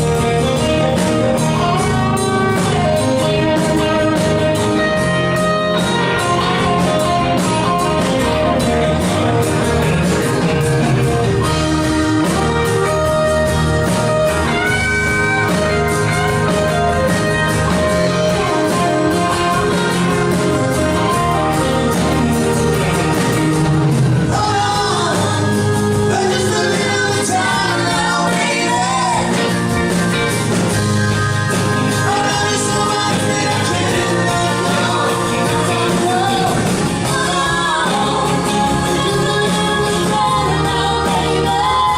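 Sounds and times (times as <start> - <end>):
rock band playing: 0.0 - 41.9
person singing: 24.3 - 29.7, 31.8 - 41.9.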